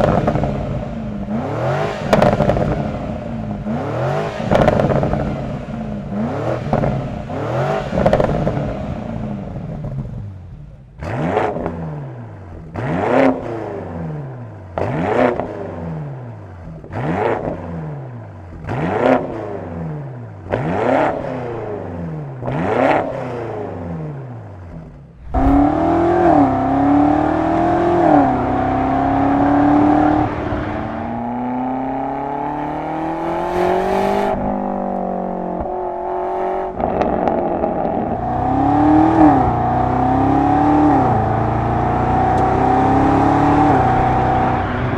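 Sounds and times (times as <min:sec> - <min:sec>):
car engine revving: 0:00.0 - 0:10.2, 0:18.4 - 0:44.9
car engine shifting gears: 0:00.0 - 0:10.3, 0:20.4 - 0:44.9.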